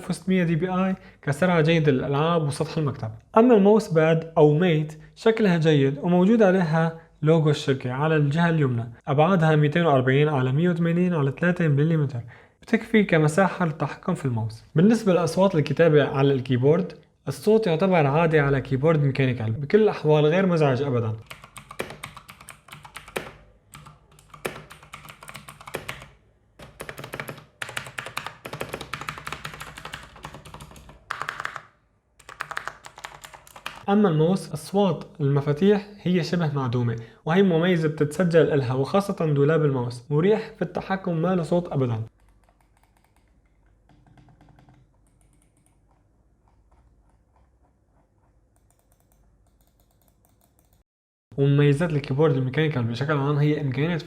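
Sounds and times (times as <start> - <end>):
mechanical keyboard typing: 21.2 - 33.9, 42.1 - 47.5, 48.2 - 50.8.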